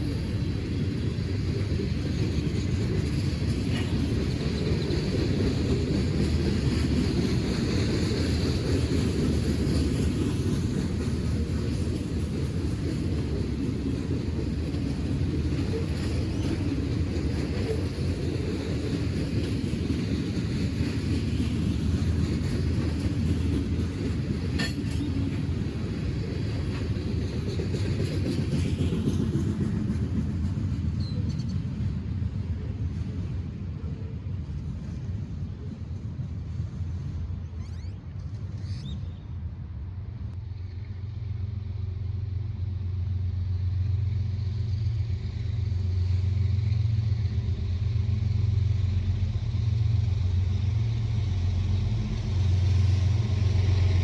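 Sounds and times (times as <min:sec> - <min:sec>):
train cars rumbling on rails: 0:00.0 - 0:54.0.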